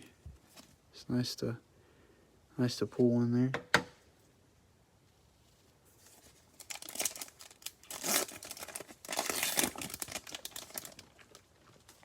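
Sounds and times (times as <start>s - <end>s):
plastic wrapper tearing and crinkling: 6.1s - 12.0s.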